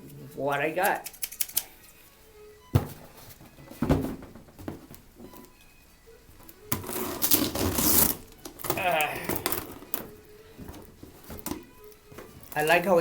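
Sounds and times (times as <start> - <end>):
cardboard scraping rustle: 2.7 - 5.5, 6.6 - 13.0.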